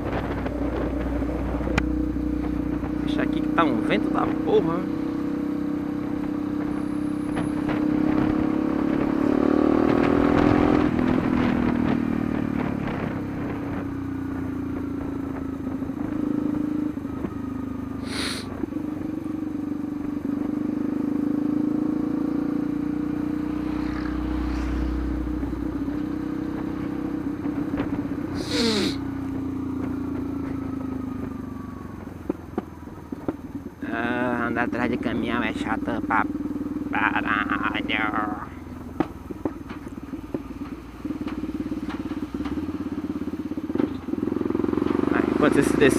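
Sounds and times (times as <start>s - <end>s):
motorcycle engine revving: 0.0s - 45.9s
bursts of hiss: 18.0s - 18.5s.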